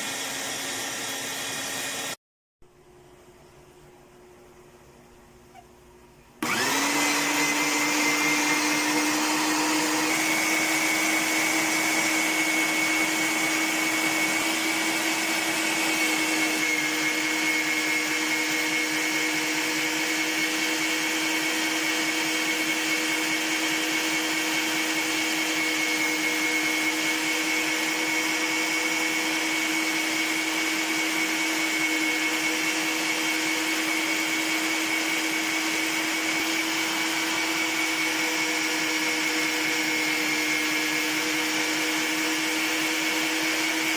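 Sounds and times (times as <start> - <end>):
meat grinder motor whine: 0.0 - 2.2, 6.4 - 43.9.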